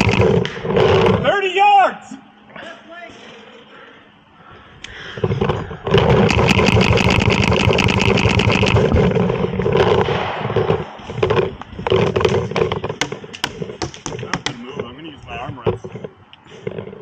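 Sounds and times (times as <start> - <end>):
paintball marker firing rapidly: 0.0 - 1.2, 5.9 - 14.2
steady hum: 0.0 - 17.0.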